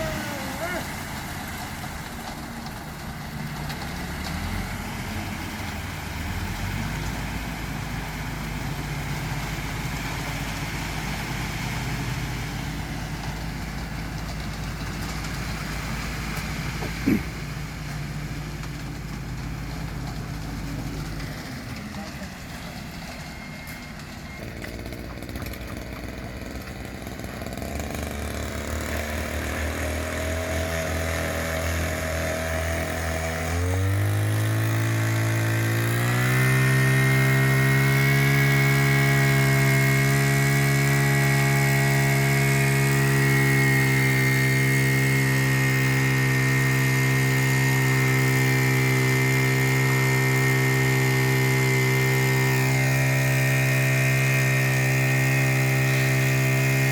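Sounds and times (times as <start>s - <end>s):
engine revving up: 0.0s - 1.0s, 27.3s - 56.9s.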